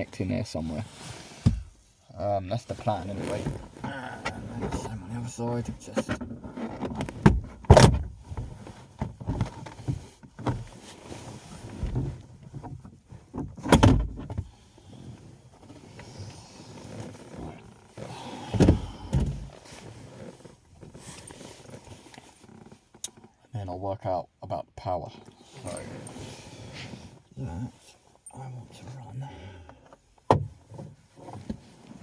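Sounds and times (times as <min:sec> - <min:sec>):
rustling handling noise: 0:14.2 - 0:23.4.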